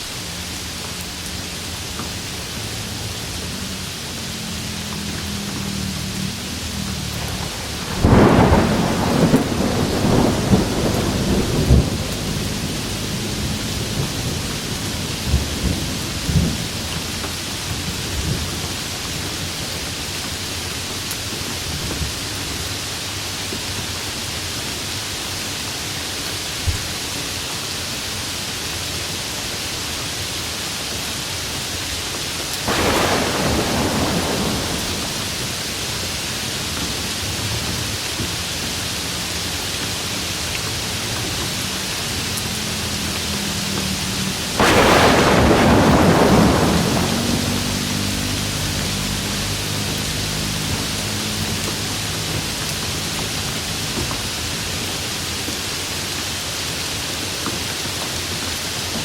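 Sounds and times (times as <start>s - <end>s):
heavy rain: 0.0s - 59.0s
rolling thunder: 6.0s - 19.1s, 32.6s - 37.8s, 44.2s - 50.0s.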